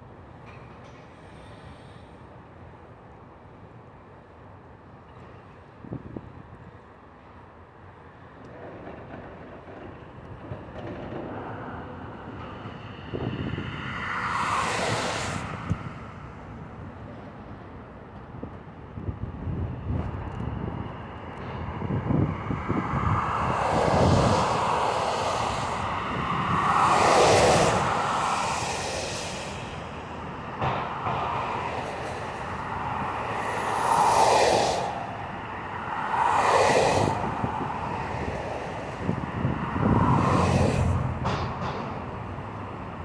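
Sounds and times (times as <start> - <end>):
steady traffic rumble: 5.6 - 43.0
vehicles whooshing past: 11.6 - 17.0, 21.0 - 43.0.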